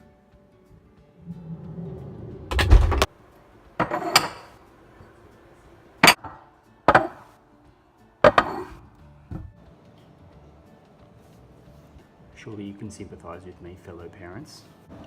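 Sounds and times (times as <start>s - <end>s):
kitchen objects clattering: 3.8s - 4.6s.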